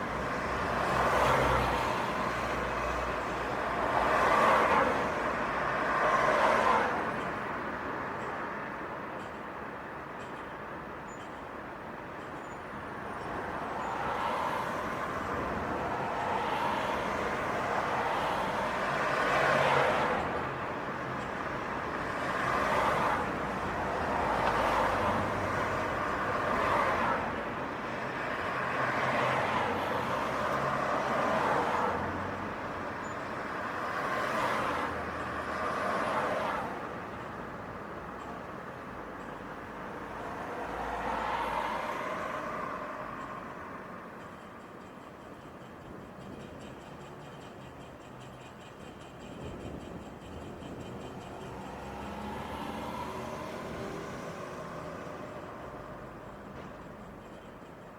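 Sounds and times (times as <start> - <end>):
cars passing: 0.0 - 7.2, 13.4 - 44.2, 49.5 - 57.2.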